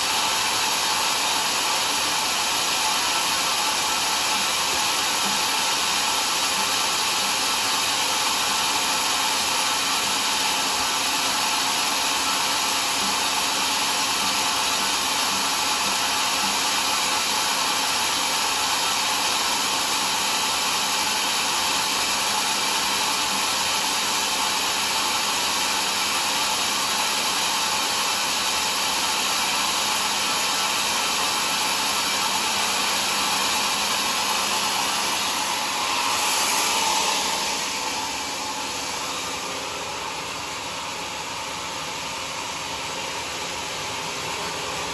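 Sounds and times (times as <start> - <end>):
sawmill whirring: 0.0 - 44.9.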